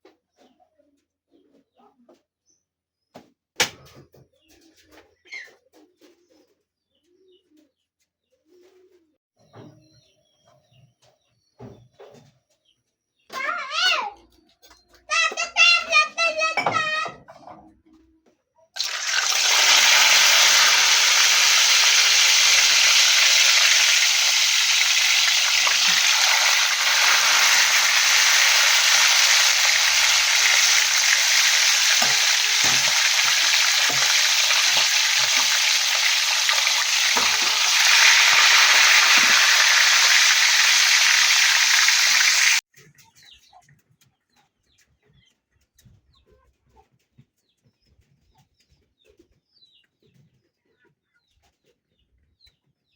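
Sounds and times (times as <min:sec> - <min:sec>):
food sizzling in a hot pan: 0:18.8 - 0:42.6.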